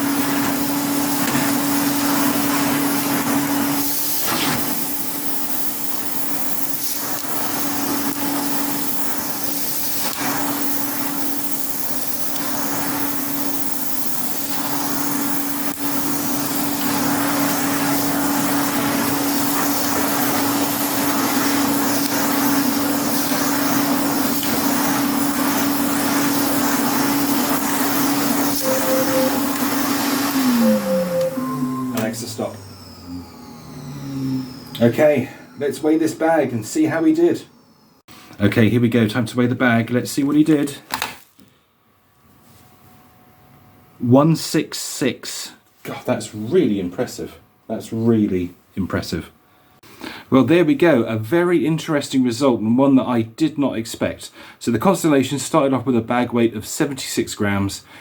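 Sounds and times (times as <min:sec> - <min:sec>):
vacuum cleaner motor whine: 0:00.0 - 0:38.0.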